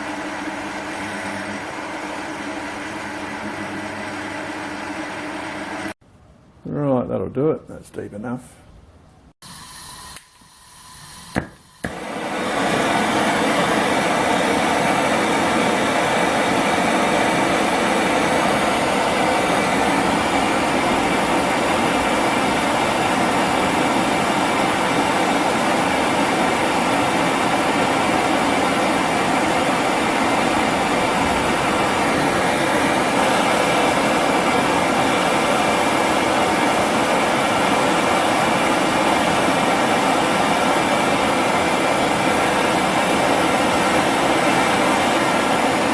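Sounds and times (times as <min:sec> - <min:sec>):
gas torch burning: 0:00.0 - 0:06.0, 0:09.4 - 0:45.9
gas torch lighting click: 0:10.1 - 0:10.5, 0:11.2 - 0:12.0.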